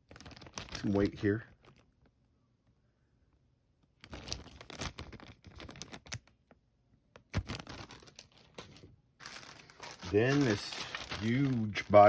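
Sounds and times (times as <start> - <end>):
plastic packaging crinkling: 0.0 - 2.1, 4.0 - 6.5, 7.2 - 12.0.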